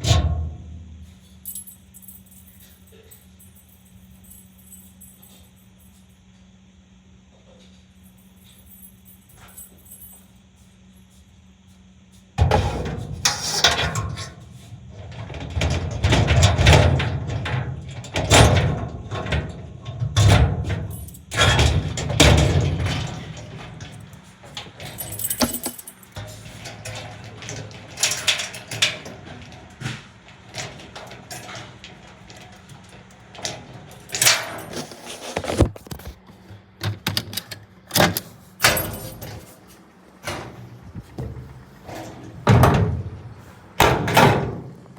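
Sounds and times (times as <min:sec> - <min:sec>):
door lock clicking and rattling: 0:25.0 - 0:26.2.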